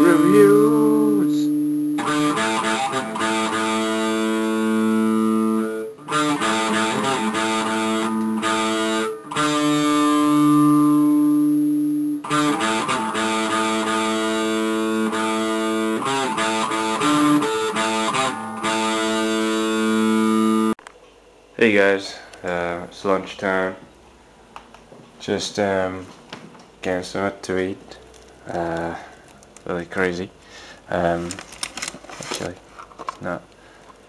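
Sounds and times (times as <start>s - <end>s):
guitar plucked chords: 0.0s - 20.8s.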